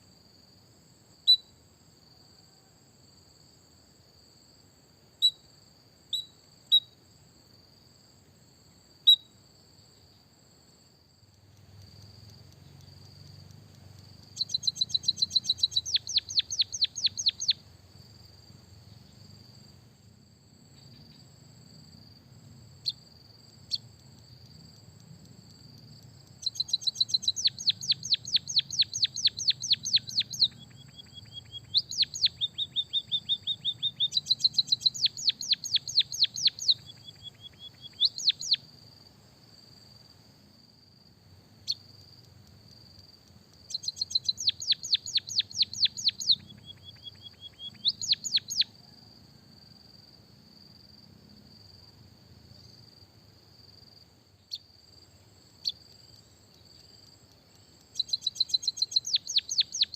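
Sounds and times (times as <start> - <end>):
high cricket-like trill: 0.0 - 3.6, 4.2 - 59.9
songbird singing high notes: 14.2 - 17.6, 26.4 - 38.6, 43.7 - 48.8, 57.9 - 59.9.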